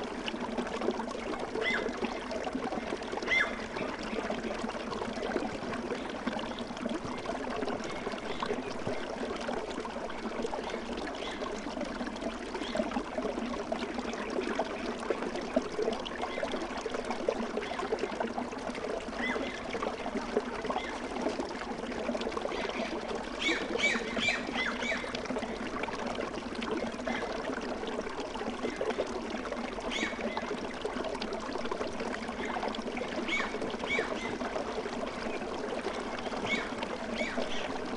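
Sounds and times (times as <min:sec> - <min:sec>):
stream water babbling: 0:00.0 - 0:37.9.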